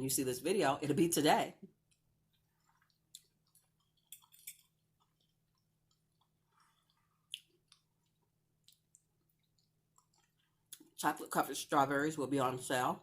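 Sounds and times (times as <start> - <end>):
chewing food: 1.6 - 11.0
wet mouth clicks: 6.6 - 7.9.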